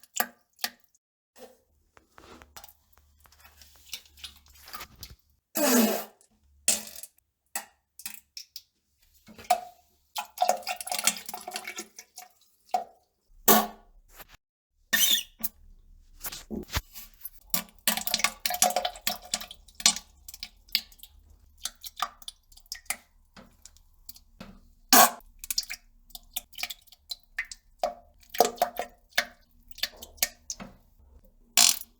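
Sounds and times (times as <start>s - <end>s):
wet plops into toilet water: 6.7s - 13.9s, 16.2s - 31.9s.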